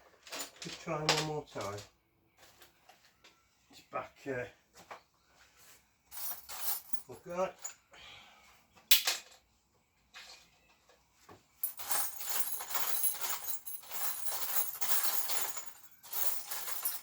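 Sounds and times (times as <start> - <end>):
metal hardware clinking: 11.6 - 17.0.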